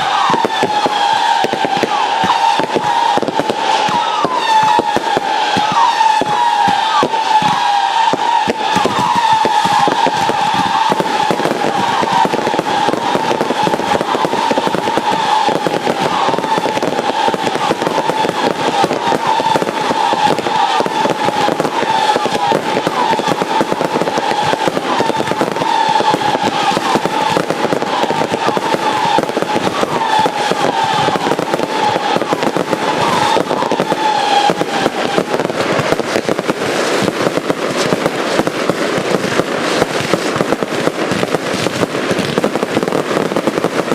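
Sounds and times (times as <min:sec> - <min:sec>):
fireworks crackling and popping: 0:00.0 - 0:43.9
wavering firework whistle: 0:00.0 - 0:43.9.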